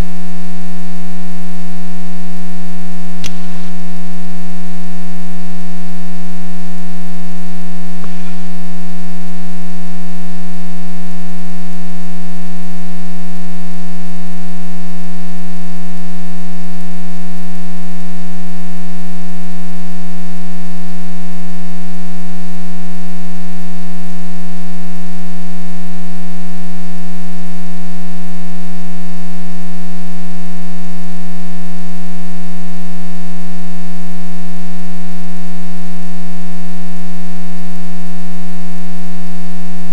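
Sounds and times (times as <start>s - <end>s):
loud steady hum: 0.0s - 12.0s
faint click: 3.2s - 3.7s.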